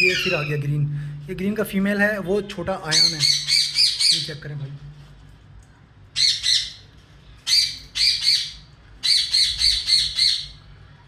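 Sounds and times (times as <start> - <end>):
parrot squawking: 0.0 - 0.7, 2.9 - 4.4, 6.2 - 10.6.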